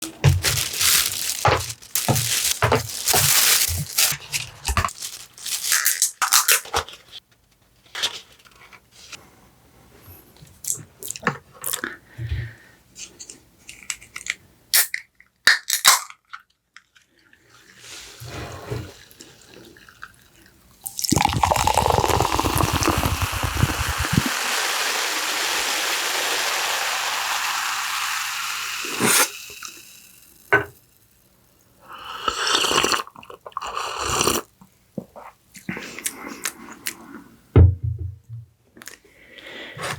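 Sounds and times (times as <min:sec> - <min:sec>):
food containers and utensils handled: 0:00.0 - 0:07.2
liquid pouring: 0:19.0 - 0:30.3.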